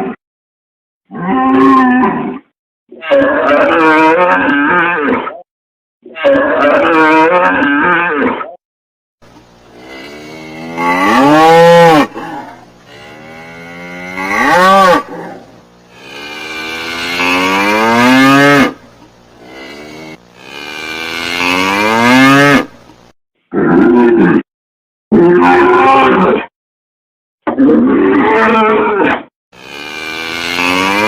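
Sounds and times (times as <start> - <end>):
cattle mooing: 9.6 - 22.7, 29.6 - 31.0.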